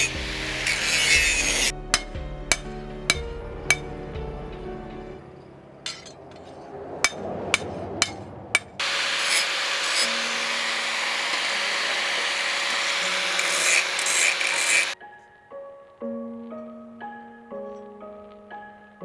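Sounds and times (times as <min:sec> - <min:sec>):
abrasive rubbing on steel blade: 0:00.0 - 0:03.9, 0:07.1 - 0:10.1
sharp metal taps: 0:02.0 - 0:03.9, 0:07.1 - 0:08.8.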